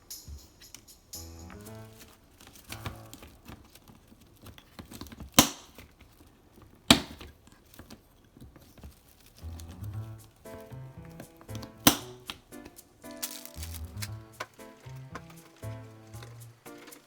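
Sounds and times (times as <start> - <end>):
soft rustling of items: 0.0 - 17.0
faint background music: 0.1 - 3.6, 9.4 - 17.0
sharp snaps: 5.4 - 5.8, 9.5 - 17.0.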